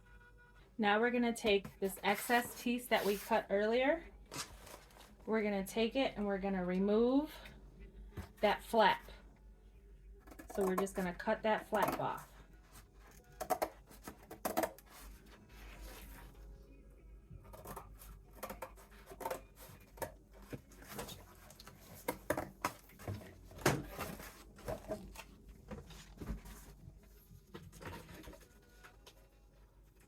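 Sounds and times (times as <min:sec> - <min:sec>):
paper rustling: 0:02.0 - 0:03.4.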